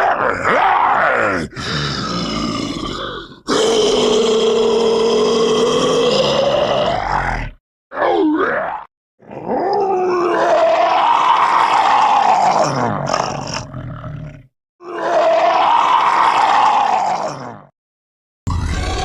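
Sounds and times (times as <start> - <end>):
person imitating a roar: 0.0 - 17.7, 18.5 - 19.0.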